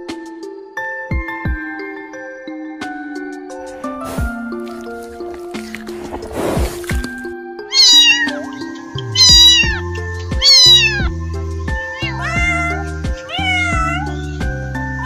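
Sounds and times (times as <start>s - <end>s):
background music: 0.0s - 15.0s
cat meowing: 7.7s - 8.6s, 9.2s - 11.1s, 11.8s - 14.5s.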